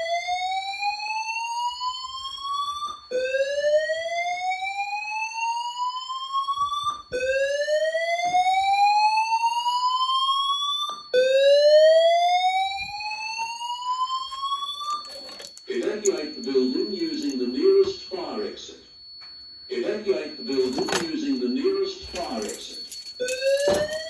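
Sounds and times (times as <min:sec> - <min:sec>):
steady high-pitched tone: 0:13.9 - 0:24.0.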